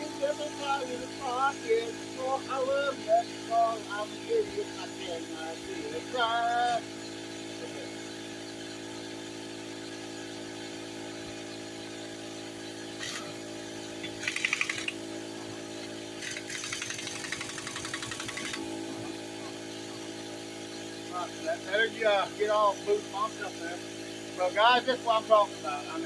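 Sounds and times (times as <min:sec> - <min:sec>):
steady hum: 0:00.0 - 0:26.0
impact wrench hammering: 0:14.0 - 0:15.0, 0:16.2 - 0:20.7.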